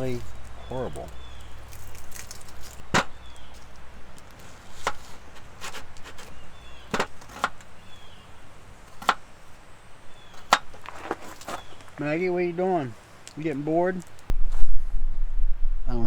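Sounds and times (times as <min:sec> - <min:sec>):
fire pops and snaps: 0:00.0 - 0:07.8
campfire crackling: 0:00.0 - 0:14.6.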